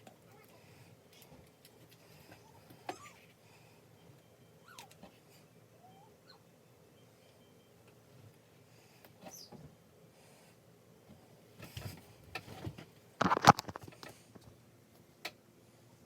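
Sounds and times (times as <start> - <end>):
handling rustling and taps: 11.6 - 15.1.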